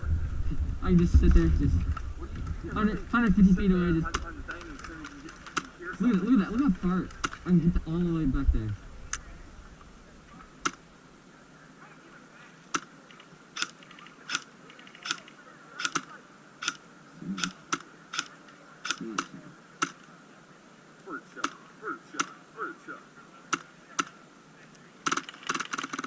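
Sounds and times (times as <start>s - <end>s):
airsoft rifle shots: 25.0s - 26.0s.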